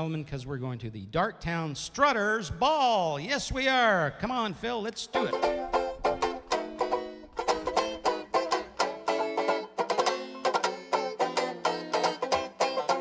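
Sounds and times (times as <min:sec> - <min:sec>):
banjo strumming chords: 0:05.1 - 0:13.0.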